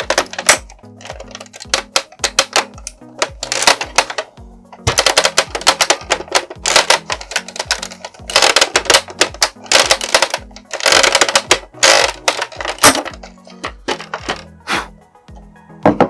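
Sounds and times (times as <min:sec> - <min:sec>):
rapid clicking and clattering: 0:00.0 - 0:14.5
background music with bass line: 0:00.0 - 0:16.0.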